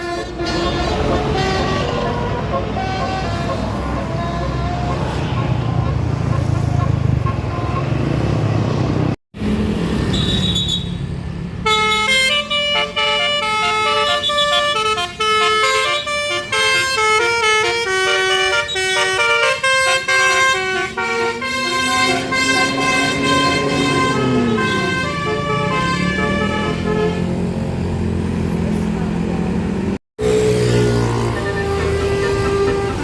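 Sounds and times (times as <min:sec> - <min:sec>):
bus horn playing fast melody: 0:00.0 - 0:08.1, 0:11.6 - 0:27.6, 0:30.8 - 0:33.0
engine and traffic rumble: 0:00.0 - 0:33.0.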